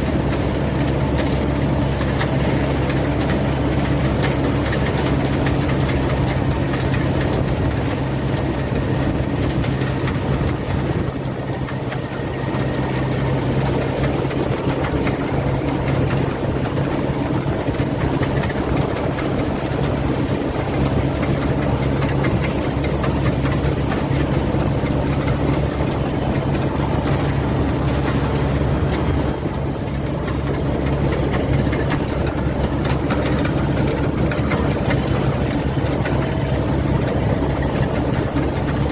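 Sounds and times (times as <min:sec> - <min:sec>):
combine harvester engine drone: 0:00.0 - 0:38.9.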